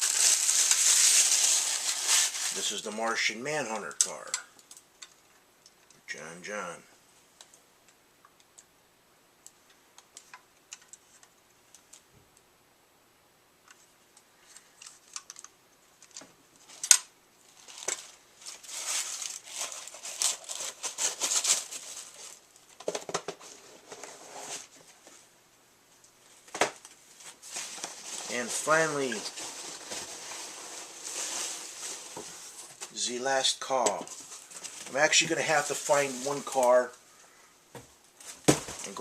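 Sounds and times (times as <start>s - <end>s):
packaging crinkling and rustling: 0.0s - 2.9s, 14.5s - 25.1s, 26.4s - 32.9s, 33.9s - 37.0s, 38.2s - 39.0s.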